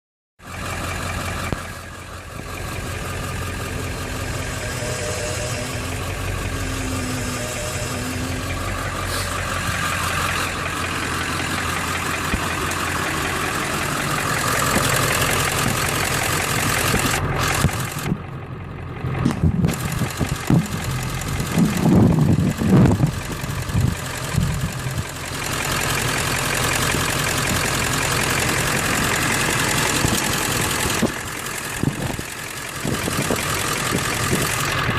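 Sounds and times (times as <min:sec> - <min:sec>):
truck engine idling: 0:00.4 - 0:34.9
low groaning and knocking: 0:19.1 - 0:24.8.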